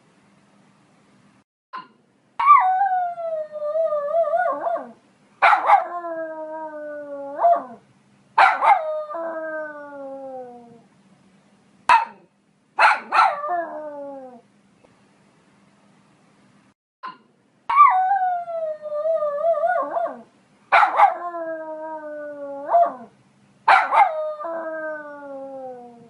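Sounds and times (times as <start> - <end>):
dog barking: 5.4 - 5.9, 8.4 - 8.8, 11.9 - 13.4, 20.7 - 21.2, 23.7 - 24.2.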